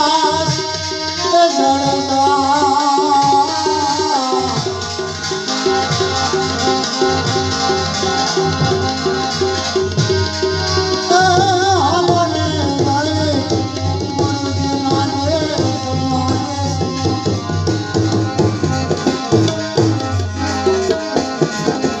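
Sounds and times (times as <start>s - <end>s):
sustained melodic accompaniment: 0.0s - 22.0s
tabla playing a steady rhythm: 0.0s - 22.0s.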